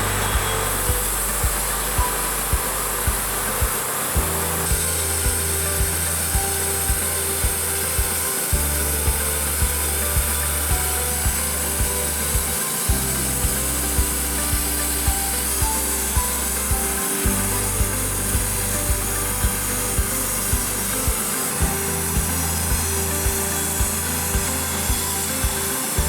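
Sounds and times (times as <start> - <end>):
low bass line: 0.0 - 26.0
music with steady beat: 0.0 - 26.0.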